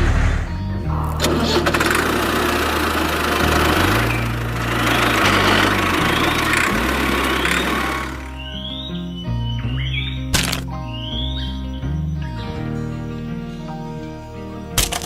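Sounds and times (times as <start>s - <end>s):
dense rattling noise: 0.0s - 8.6s
engine droning: 0.0s - 13.2s.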